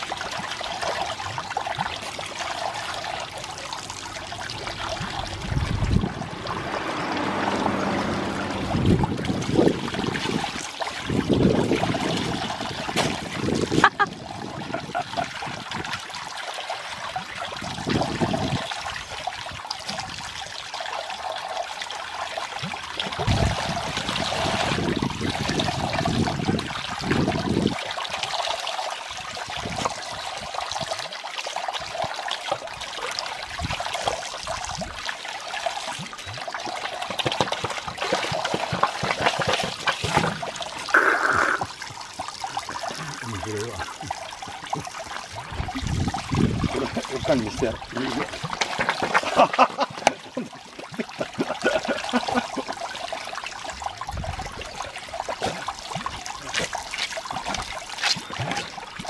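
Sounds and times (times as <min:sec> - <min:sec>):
water running from hose splashing: 0:00.0 - 0:59.0
low rumbling bursts: 0:03.5 - 0:10.0.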